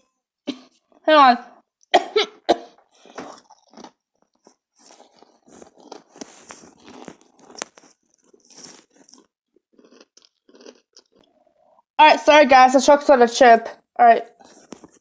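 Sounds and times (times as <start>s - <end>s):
person chewing crunchy chip: 2.8s - 11.8s.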